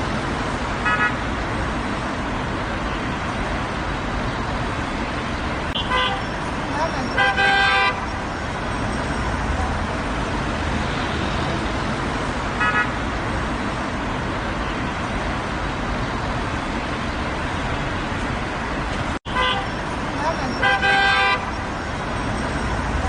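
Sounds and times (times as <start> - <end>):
rumble of passing cars: 0.0 - 23.0
car horn toot: 5.8 - 6.3, 7.0 - 8.1, 12.6 - 13.0, 19.3 - 19.8, 20.5 - 21.6.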